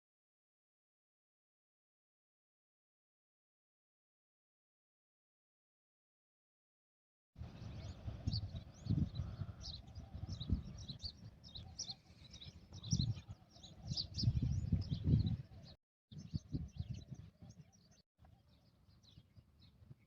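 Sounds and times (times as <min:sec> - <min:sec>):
small birds chirping: 0:07.4 - 0:20.0.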